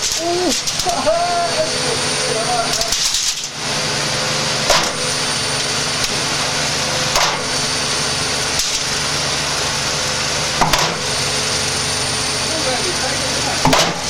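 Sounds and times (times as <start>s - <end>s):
washing machine drum spinning: 0.0s - 14.0s.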